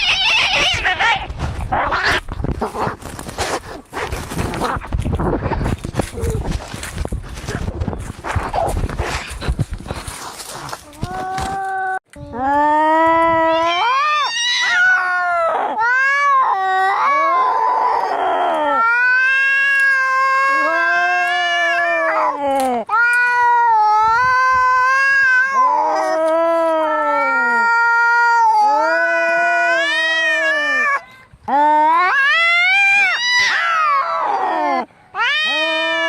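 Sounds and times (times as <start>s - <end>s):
cats yowling: 0.0s - 2.3s, 13.3s - 31.0s, 31.6s - 36.0s.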